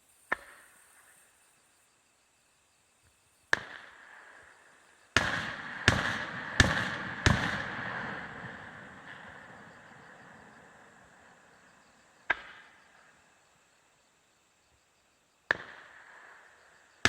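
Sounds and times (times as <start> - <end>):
faint insect chirring: 0.0 - 5.2, 8.5 - 17.0
fireworks bursting with rolling echo: 3.5 - 12.7.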